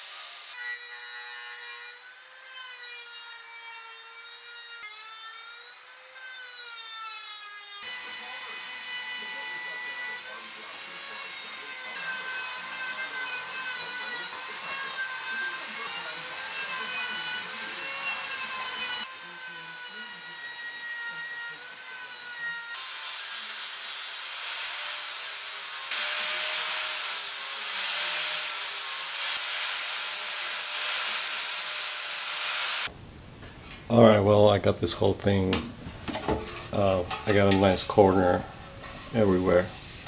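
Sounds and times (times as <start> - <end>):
electric grinder motor whine: 0.0 - 32.9
grinding hiss on steel: 22.8 - 32.9.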